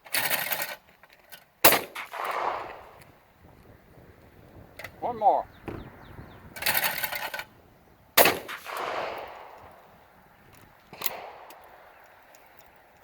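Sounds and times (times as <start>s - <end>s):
shotgun shot echoing: 1.6s - 3.2s, 8.2s - 10.0s, 10.9s - 12.0s.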